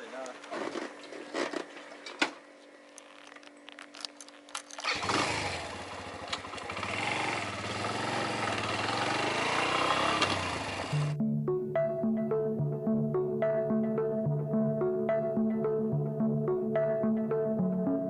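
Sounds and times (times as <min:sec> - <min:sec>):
motorcycle engine revving: 0:04.8 - 0:11.2.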